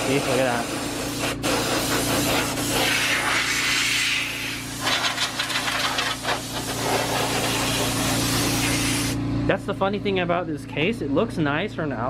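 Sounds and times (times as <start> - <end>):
compressed air hissing: 0.0 - 9.2
steady low hum: 0.0 - 12.0
rapid scraping rattling clicks: 4.8 - 7.4.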